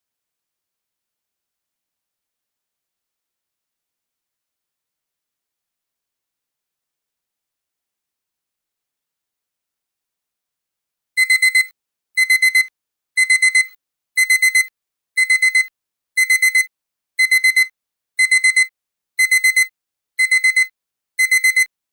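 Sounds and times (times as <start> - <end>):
alarm clock rapid beeping: 11.2 - 21.7.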